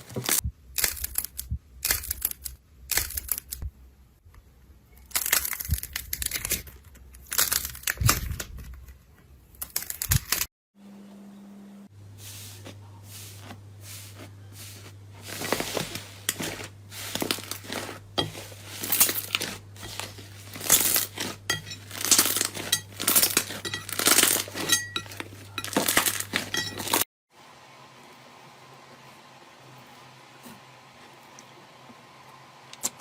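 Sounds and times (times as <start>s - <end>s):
slime crackling and popping: 18.8s - 24.4s.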